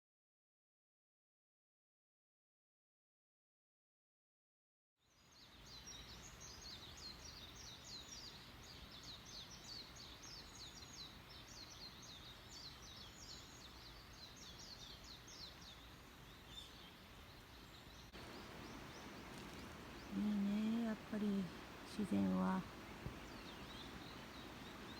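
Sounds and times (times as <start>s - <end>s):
bird chirping: 5.1s - 24.9s
low outdoor hum: 18.1s - 24.9s.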